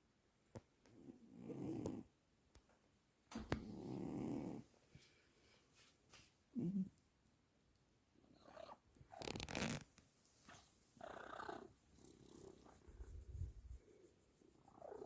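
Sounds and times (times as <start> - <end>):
cat snoring: 3.6 - 4.6.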